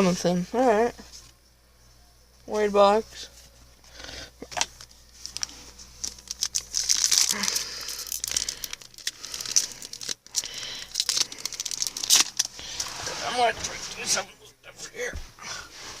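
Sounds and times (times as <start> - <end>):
wrapper crinkling and tearing: 4.4 - 13.8.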